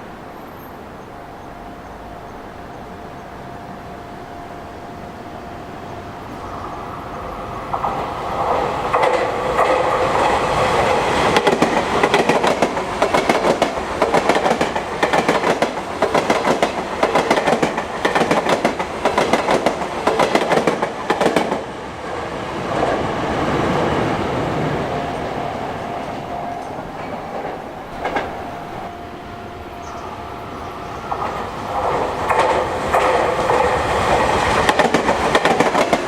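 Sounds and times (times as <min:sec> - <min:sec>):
train running rumble: 0:00.0 - 0:36.0
train wheels clacking: 0:06.3 - 0:23.2, 0:24.9 - 0:28.9, 0:29.8 - 0:36.0.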